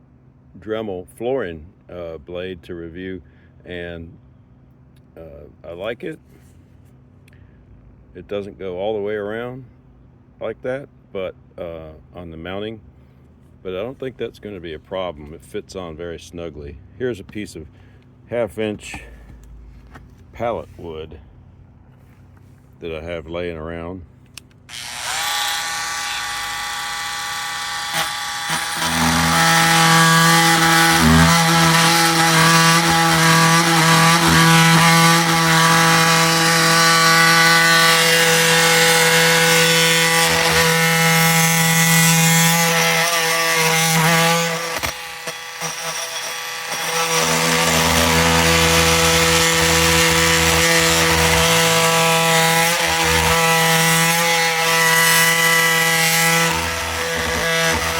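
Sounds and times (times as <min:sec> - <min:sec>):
multi-tool buzzing through wood: 0:24.3 - 0:57.9.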